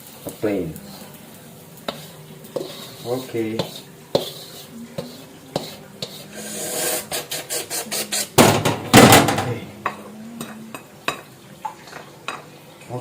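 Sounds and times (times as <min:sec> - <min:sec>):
spatula scraping and knocking a pan: 0:01.8 - 0:09.6.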